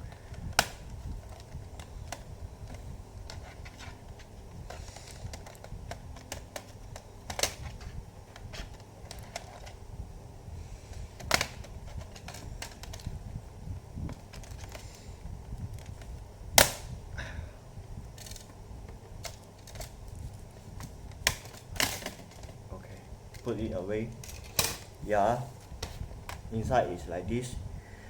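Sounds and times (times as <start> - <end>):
plastic ticks and handling: 0.0 - 9.8, 10.9 - 13.2, 14.1 - 15.0, 18.1 - 24.8
plastic clips snapping: 0.4 - 3.9, 4.7 - 9.8, 11.2 - 13.1, 16.6 - 16.9, 20.8 - 22.6.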